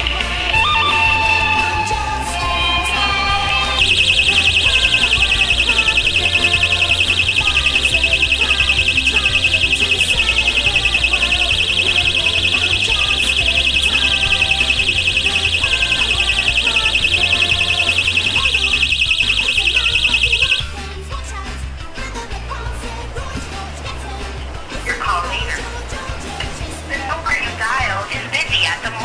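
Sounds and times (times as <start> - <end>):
background music with bass: 0.0 - 29.0
car alarm high-pitched pulsing buzzer: 3.0 - 20.7.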